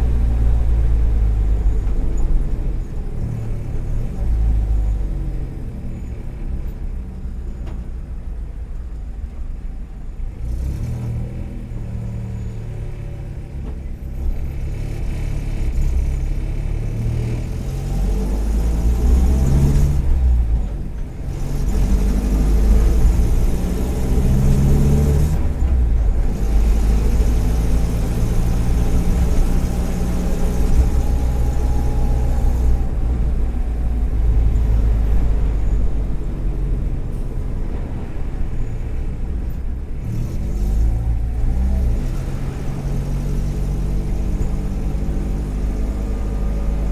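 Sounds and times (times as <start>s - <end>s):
car engine accelerating: 10.3s - 46.9s.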